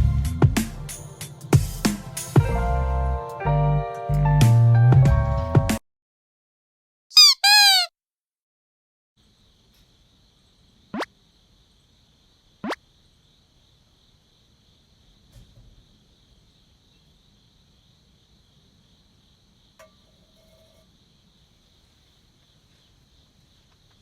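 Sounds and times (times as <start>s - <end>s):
insects chirring: 9.2s - 24.0s.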